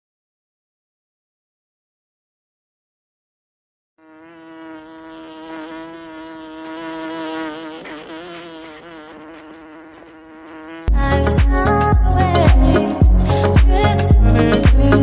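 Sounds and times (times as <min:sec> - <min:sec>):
steady buzzing tone: 0:04.0 - 0:12.2.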